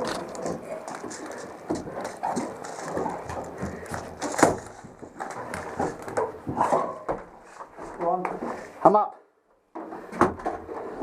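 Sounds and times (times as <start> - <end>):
footsteps on wooden boards: 0.0 - 8.7.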